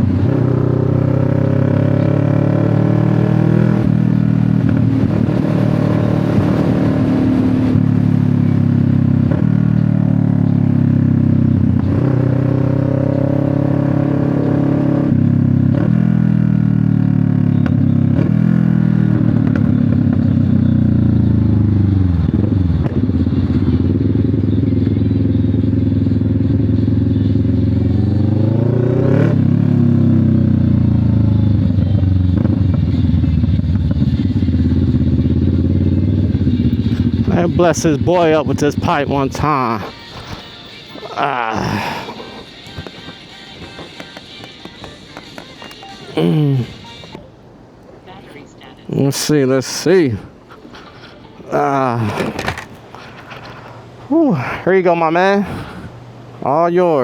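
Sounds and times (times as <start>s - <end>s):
motorcycle engine revving: 0.0s - 44.4s.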